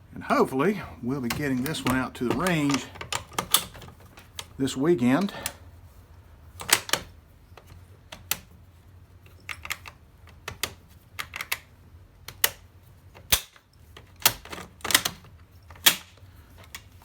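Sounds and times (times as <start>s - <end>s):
rifle bolt clicks and clacks: 1.3s - 4.6s, 13.2s - 16.9s.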